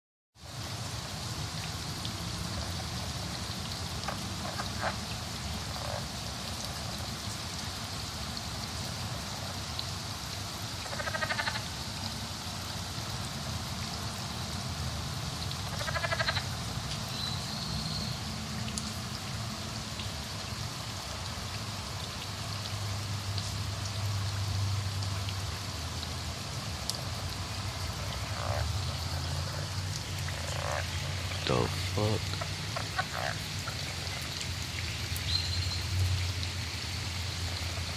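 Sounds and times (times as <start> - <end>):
animal call of rapid pulses: 10.8 - 11.7, 15.7 - 16.5, 28.2 - 33.8
faint short animal calls: 10.9 - 11.6
steady hiss: 19.0 - 37.9.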